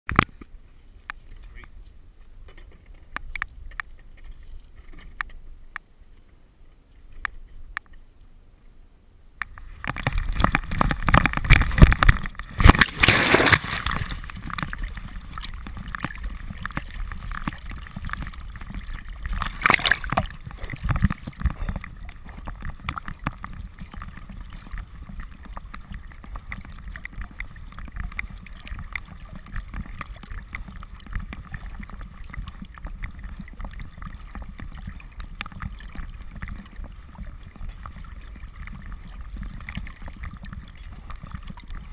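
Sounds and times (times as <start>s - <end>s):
water sloshing and gurgling: 0.1s - 8.1s, 9.4s - 41.9s
water splashing: 9.4s - 41.9s.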